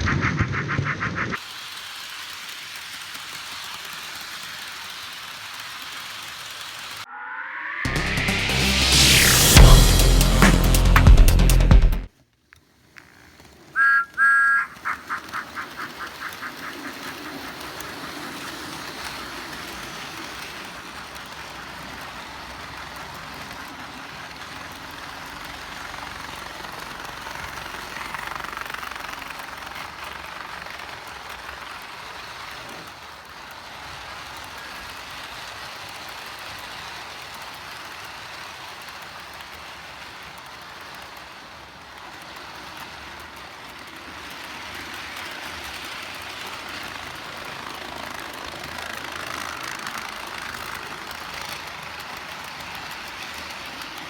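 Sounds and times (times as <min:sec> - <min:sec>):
fast rattle: 0:00.2 - 0:07.0, 0:14.8 - 0:54.0
toy train motors whirring: 0:01.2 - 0:07.0, 0:12.4 - 0:54.0.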